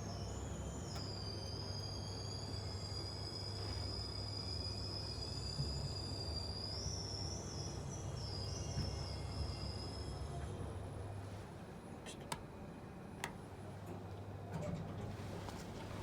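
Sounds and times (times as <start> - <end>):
elevator high squeal: 0.0 - 11.3
low rumble of elevator car: 0.0 - 11.6, 13.4 - 16.0.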